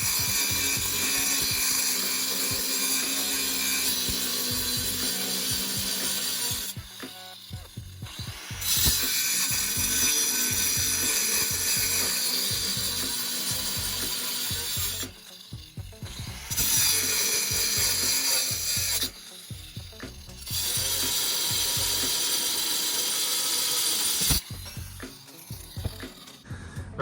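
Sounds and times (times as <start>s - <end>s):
welding arc crackling: 0.0s - 26.5s.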